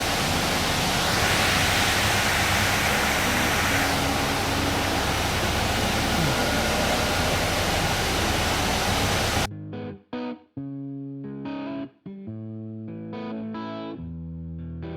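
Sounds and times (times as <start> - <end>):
loud rushing noise: 0.0 - 9.5
electric guitar music: 0.0 - 14.9.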